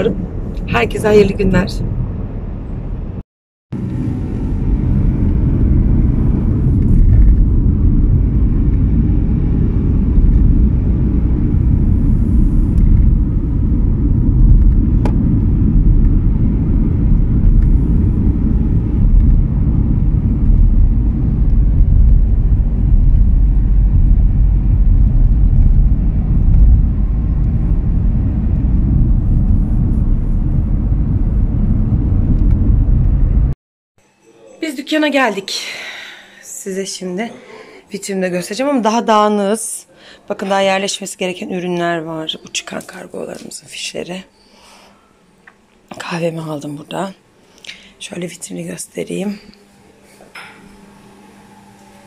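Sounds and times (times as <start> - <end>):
car engine and road noise: 0.0 - 33.6, 48.9 - 52.0.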